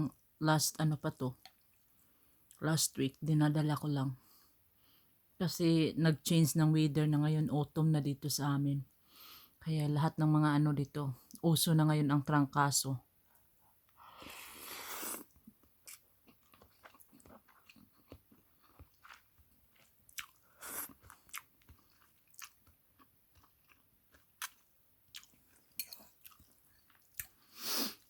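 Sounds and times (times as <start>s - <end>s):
chewing with wet mouth clicks: 15.3s - 27.4s.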